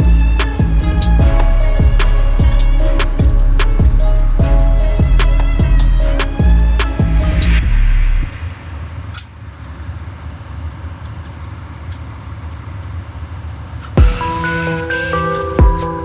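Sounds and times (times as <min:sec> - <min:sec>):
music: 0:00.0 - 0:08.4, 0:14.0 - 0:16.0.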